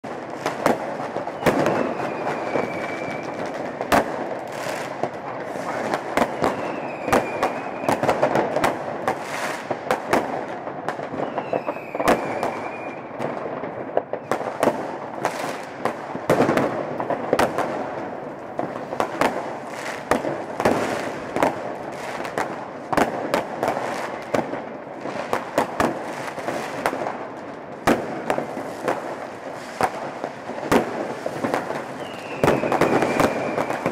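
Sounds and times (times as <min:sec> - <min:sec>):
fireworks and firecrackers banging: 0:00.0 - 0:33.9
high firework whistle: 0:01.2 - 0:03.6, 0:05.5 - 0:08.4, 0:11.0 - 0:13.2, 0:23.8 - 0:24.6, 0:31.2 - 0:33.9.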